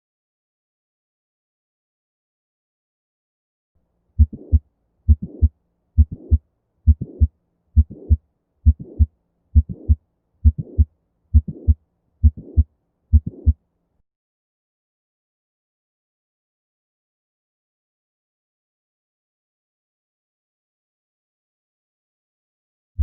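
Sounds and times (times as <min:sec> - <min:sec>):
heart murmur: 0:04.2 - 0:13.6
heartbeat thumps: 0:04.2 - 0:13.6.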